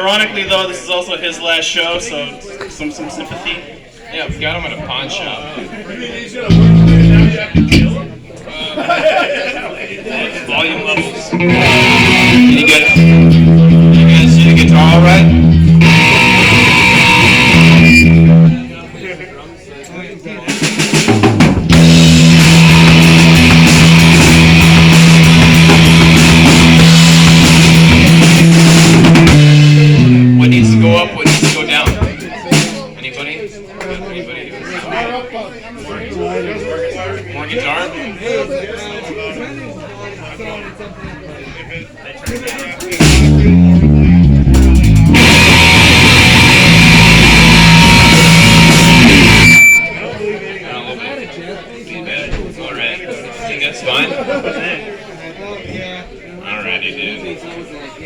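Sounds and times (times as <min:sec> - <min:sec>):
distorted electric guitar chords: 0:06.5 - 0:08.2, 0:11.3 - 0:18.7, 0:21.6 - 0:31.1, 0:43.0 - 0:50.0
drums and cymbals crashing: 0:06.5 - 0:08.2, 0:11.4 - 0:18.6, 0:20.5 - 0:33.0, 0:42.2 - 0:50.1.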